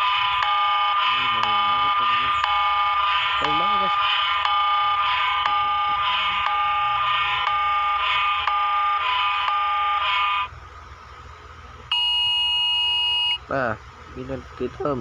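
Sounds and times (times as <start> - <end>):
pulsing alarm tone chord: 0.0 - 10.0.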